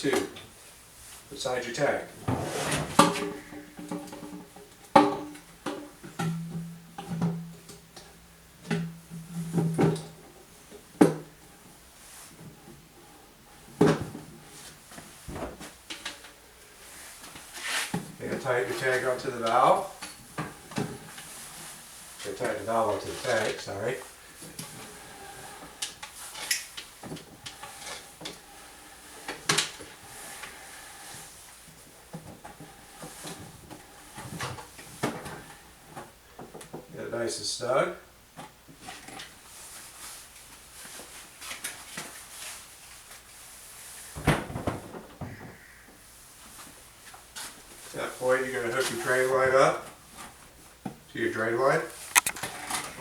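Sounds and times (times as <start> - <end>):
hollow ringing hum: 6.2 - 7.8
plastic clicks and rubbing: 52.1 - 52.5.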